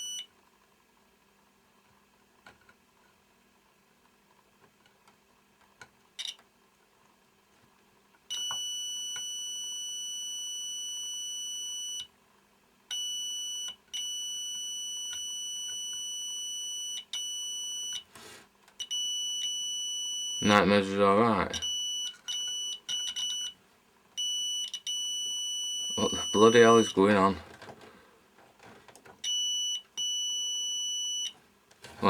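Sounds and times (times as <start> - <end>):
multimeter continuity beep: 0.0 - 0.3, 8.3 - 12.1, 12.9 - 18.1, 18.8 - 20.7, 21.5 - 23.6, 24.2 - 27.0, 29.2 - 31.4.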